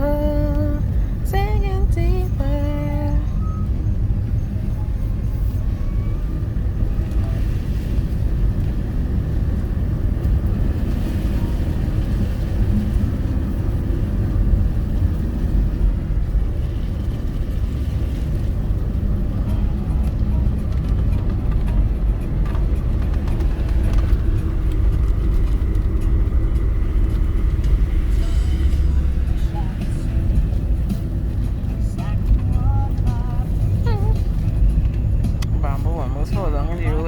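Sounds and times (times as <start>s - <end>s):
car engine and tyre rumble: 0.0s - 37.0s.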